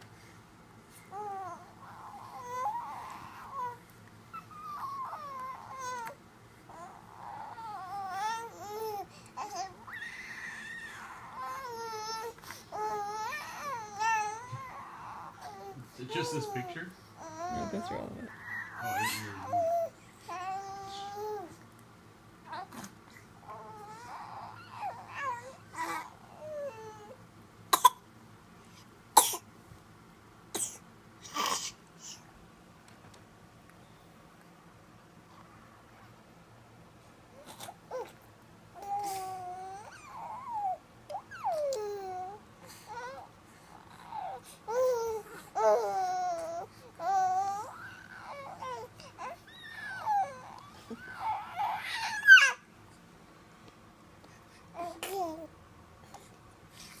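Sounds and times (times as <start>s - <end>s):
baby cooing: 1.1s - 3.8s, 4.4s - 21.5s
infant squealing and babbling: 1.2s - 3.8s, 4.4s - 6.1s, 6.7s - 21.5s, 38.8s - 42.4s, 43.9s - 52.6s
baby coughing: 27.7s - 28.0s, 29.2s - 29.4s, 30.5s - 30.8s.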